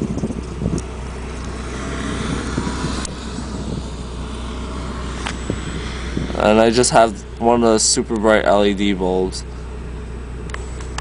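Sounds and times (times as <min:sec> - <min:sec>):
wind buffeting microphone: 0:00.0 - 0:07.8.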